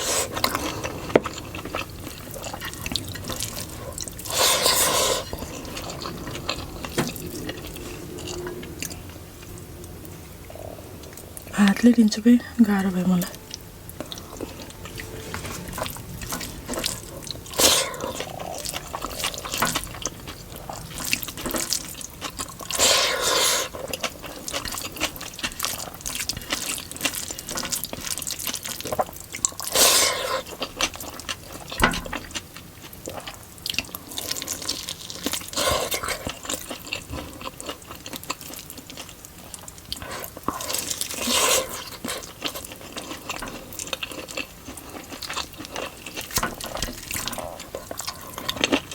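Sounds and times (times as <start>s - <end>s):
wet chewing and smacking: 0.0s - 11.4s, 13.5s - 48.9s
squelchy eating burst: 17.2s - 19.6s, 22.7s - 23.9s.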